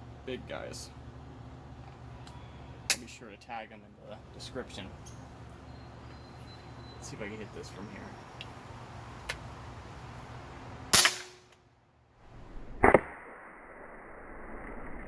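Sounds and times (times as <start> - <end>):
airgun shot: 10.9 - 11.5
loud double crack: 10.9 - 11.6.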